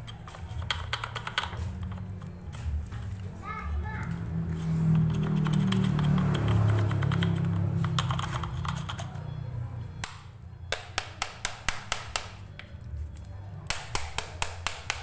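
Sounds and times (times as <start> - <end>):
sharp evenly spaced clicks: 4.9 - 9.1.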